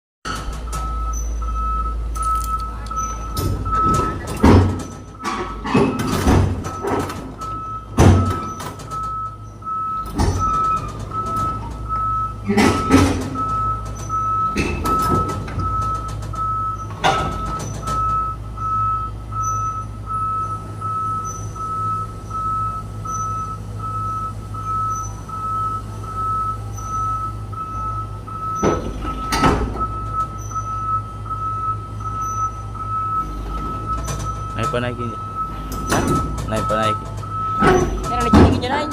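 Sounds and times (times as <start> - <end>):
heavy metal clanks and knocks: 0.2 - 19.8, 26.7 - 31.3, 32.0 - 38.9
heavy machinery engine running: 0.3 - 38.9
warning alarm beeping: 0.3 - 38.9.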